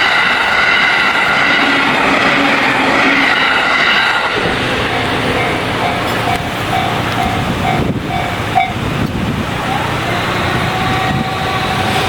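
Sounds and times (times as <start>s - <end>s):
level crossing alarm ringing: 0.0s - 8.9s
steady vehicle noise: 0.0s - 12.0s.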